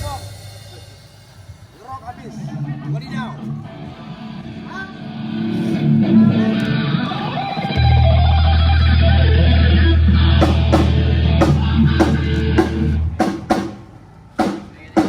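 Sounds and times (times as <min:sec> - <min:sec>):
loud electric guitar: 0:02.1 - 0:13.6
deep bass note: 0:07.8 - 0:13.3
sharp drum hits: 0:10.4 - 0:14.7.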